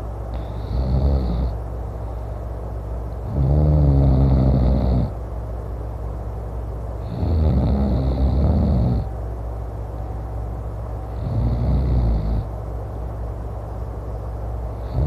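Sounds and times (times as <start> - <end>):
man snoring loudly: 0.6 - 1.6, 3.3 - 5.1, 7.1 - 9.1, 11.2 - 12.5.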